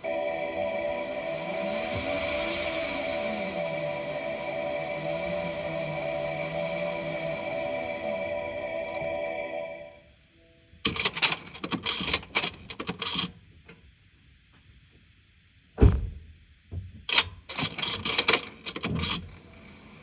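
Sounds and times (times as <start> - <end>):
low mechanical thump: 15.8 - 17.1.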